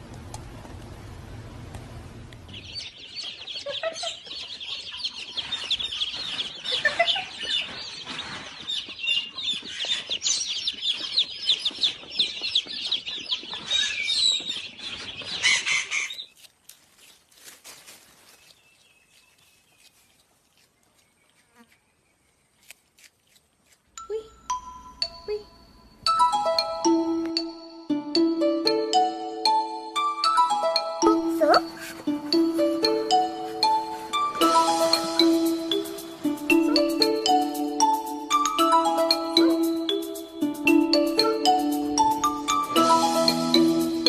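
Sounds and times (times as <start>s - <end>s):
birds chirping chorus: 2.4s - 23.0s.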